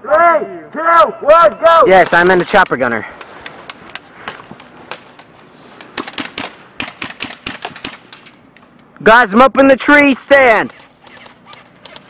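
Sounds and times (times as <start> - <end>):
airsoft guns firing: 5.8 - 8.4.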